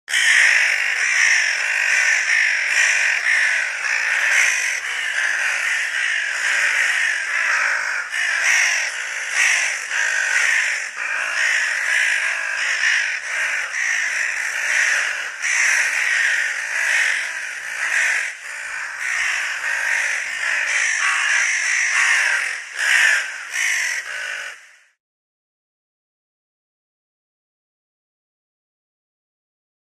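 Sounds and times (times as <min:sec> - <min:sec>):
crows cawing: 0:00.1 - 0:25.0.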